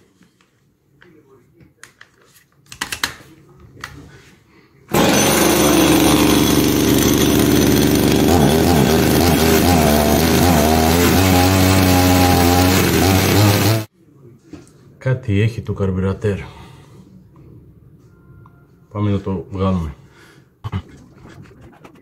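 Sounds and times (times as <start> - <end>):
small chainsaw engine running: 4.9 - 13.9.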